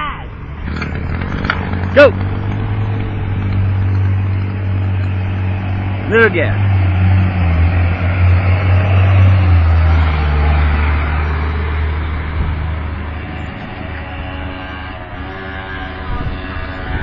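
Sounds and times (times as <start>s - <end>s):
scooter engine running: 0.3s - 17.0s.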